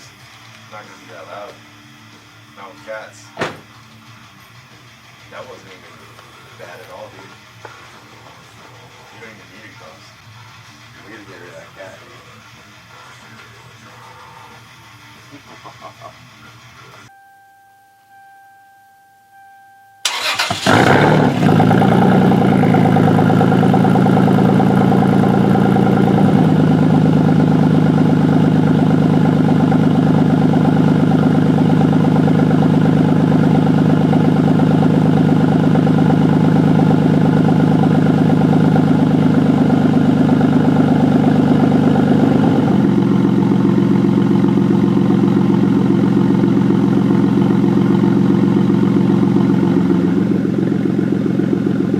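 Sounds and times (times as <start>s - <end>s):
car engine starting and idling: 0.0s - 17.1s, 20.0s - 51.9s.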